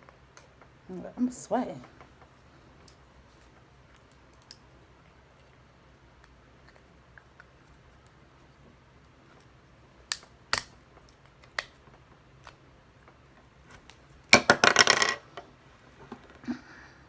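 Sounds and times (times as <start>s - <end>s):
plastic toys clicking and snapping: 10.1s - 11.8s.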